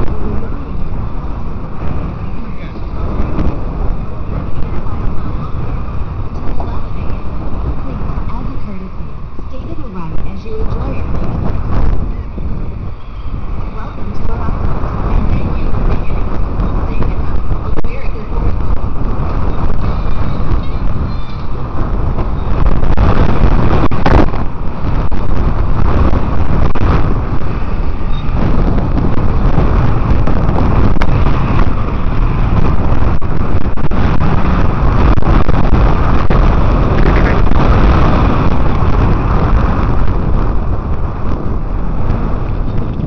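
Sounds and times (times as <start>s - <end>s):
low rumble of bicycle ride: 0.0s - 43.0s
wind buffeting microphone: 0.0s - 43.0s.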